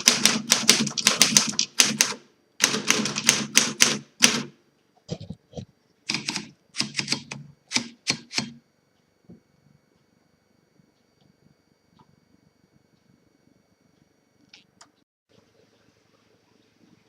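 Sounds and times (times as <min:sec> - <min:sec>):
manual typewriter typing: 0:00.0 - 0:04.5, 0:06.1 - 0:08.6.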